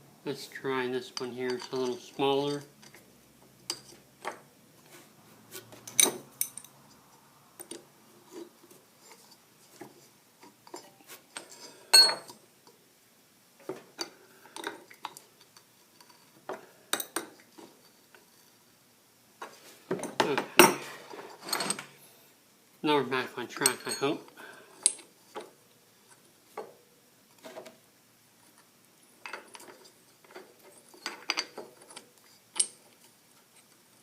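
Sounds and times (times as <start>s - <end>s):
steel pieces clinking together: 1.1s - 3.0s, 10.7s - 12.4s, 23.5s - 25.1s.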